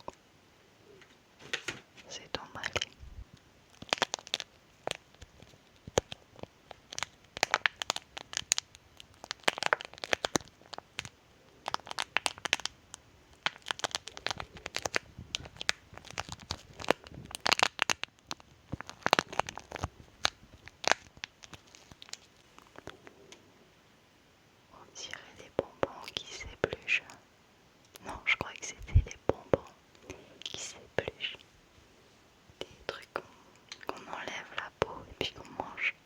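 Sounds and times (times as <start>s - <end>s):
plastic wrapper crinkling and tearing: 1.5s - 3.0s, 3.7s - 23.4s.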